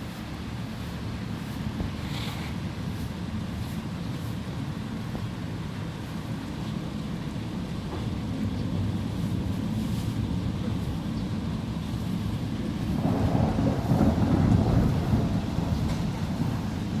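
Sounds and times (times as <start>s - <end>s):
rain: 0.0s - 17.0s
wind buffeting microphone: 12.6s - 17.0s.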